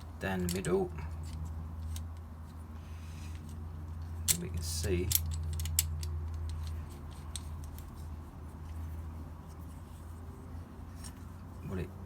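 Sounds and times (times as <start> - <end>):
metallic tool clicks: 4.2 - 8.0.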